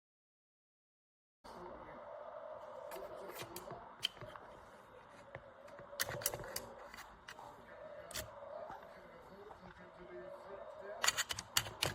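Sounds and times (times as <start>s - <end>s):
faint steady hum: 1.5s - 11.9s
small objects clicking and knocking: 11.0s - 11.9s.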